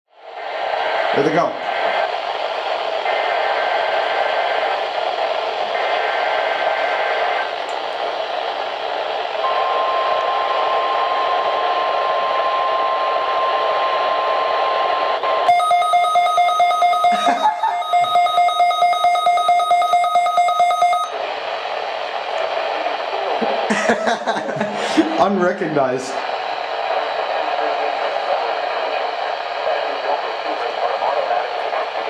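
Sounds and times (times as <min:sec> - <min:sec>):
radio static: 0:00.2 - 0:15.7, 0:19.8 - 0:32.0
data tone bursts: 0:09.4 - 0:21.2
pulsing receiver alert alarm: 0:09.4 - 0:21.2
steady warning alarm tone: 0:09.4 - 0:21.2.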